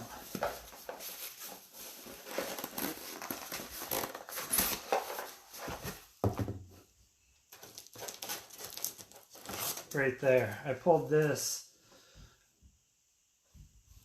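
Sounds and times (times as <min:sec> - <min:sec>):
plastic crinkling and rustling: 0:00.0 - 0:06.0, 0:07.5 - 0:11.1.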